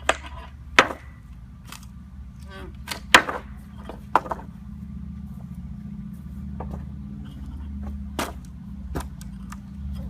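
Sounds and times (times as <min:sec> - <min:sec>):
wooden boards knocking and clattering: 0:00.0 - 0:01.2, 0:02.9 - 0:04.5, 0:07.8 - 0:09.2
steady low hum: 0:00.0 - 0:10.0.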